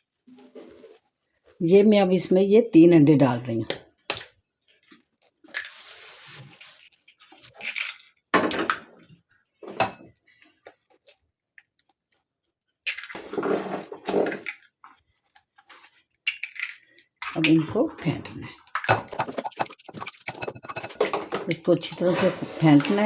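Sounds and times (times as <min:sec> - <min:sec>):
eggshells cracking: 0:12.9 - 0:13.4, 0:18.5 - 0:21.5.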